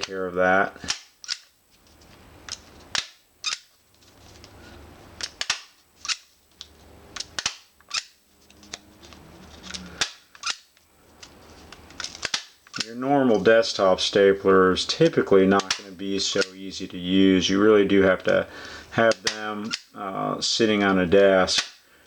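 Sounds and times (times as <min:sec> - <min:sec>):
stapler clacking through paper: 0:02.5 - 0:03.6, 0:05.2 - 0:06.2, 0:07.2 - 0:08.1, 0:09.7 - 0:10.6.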